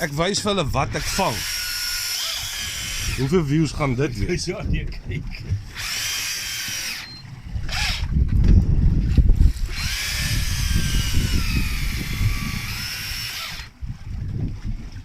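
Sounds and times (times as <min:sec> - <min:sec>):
fishing reel motor whining: 0:01.0 - 0:04.3, 0:05.7 - 0:08.3, 0:09.0 - 0:14.0
wind rumble on microphone: 0:02.4 - 0:15.0.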